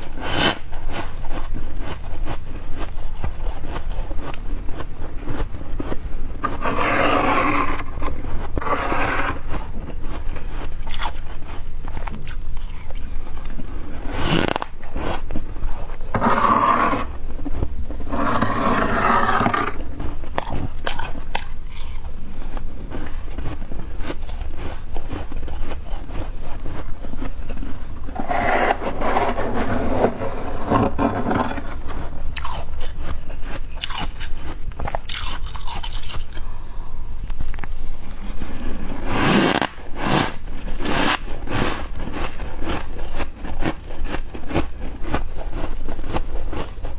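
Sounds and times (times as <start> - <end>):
crunchy chewing: 0.0 - 46.9
spoon scraping frost: 2.8 - 11.6, 12.9 - 22.2, 22.8 - 34.6.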